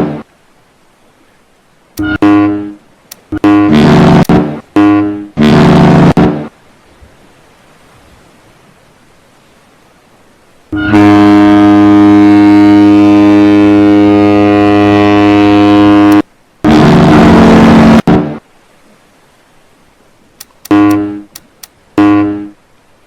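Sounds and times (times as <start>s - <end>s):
ship horn blasts: 0.0s - 0.3s, 2.0s - 6.5s, 10.7s - 18.4s, 20.6s - 22.7s.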